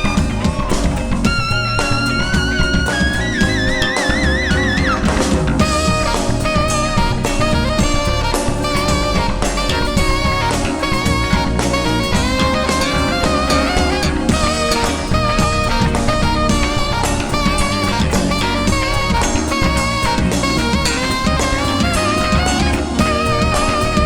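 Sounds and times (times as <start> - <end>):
drum kit beat: 0.0 - 24.0
melodic lead line with vibrato: 0.0 - 24.0.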